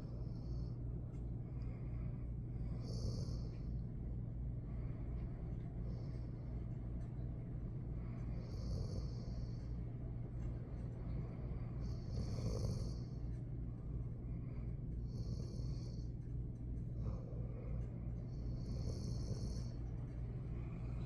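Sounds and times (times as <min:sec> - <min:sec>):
dog snoring: 0:02.6 - 0:03.7, 0:08.0 - 0:09.8, 0:11.2 - 0:13.3, 0:15.1 - 0:16.1, 0:17.0 - 0:21.0.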